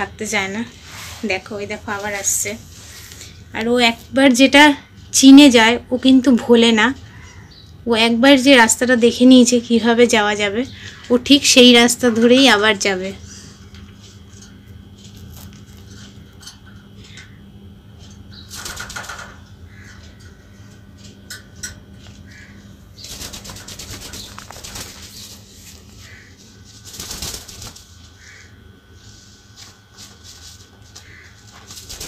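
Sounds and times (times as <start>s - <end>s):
steady low hum: 0.0s - 32.0s
parrot flapping wings: 18.5s - 19.4s, 22.3s - 28.4s, 29.6s - 32.0s.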